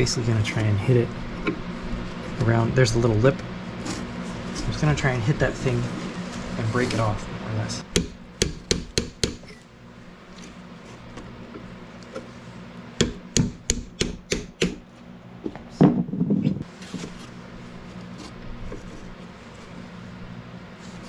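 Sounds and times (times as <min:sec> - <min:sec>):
hammer striking metal punch: 0:13.0 - 0:14.8.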